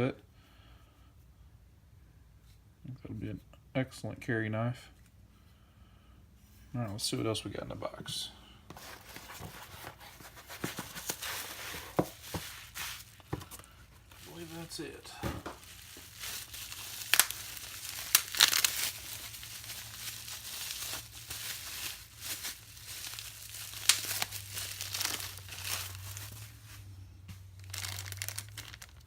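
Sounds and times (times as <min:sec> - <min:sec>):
packaging wrap crinkling and tearing: 0:08.8 - 0:26.8, 0:27.6 - 0:29.0.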